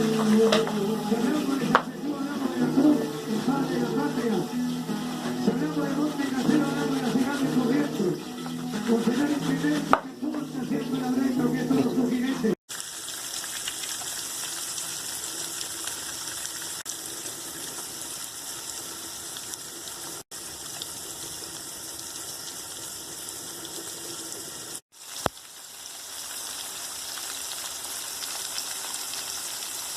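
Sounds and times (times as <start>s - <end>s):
flowing water: 12.7s - 29.9s.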